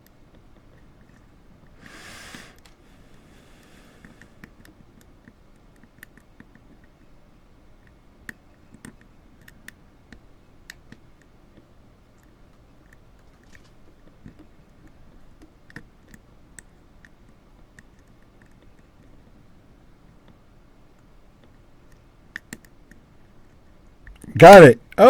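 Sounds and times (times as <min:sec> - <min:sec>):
brief hiss: 0:01.8 - 0:04.2.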